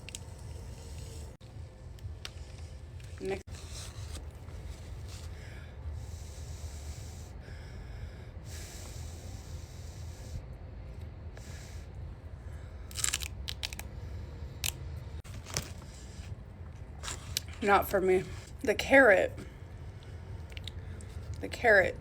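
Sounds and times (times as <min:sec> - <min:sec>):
steady low hum: 0:00.0 - 0:22.0
crunchy food chewing: 0:12.9 - 0:14.0.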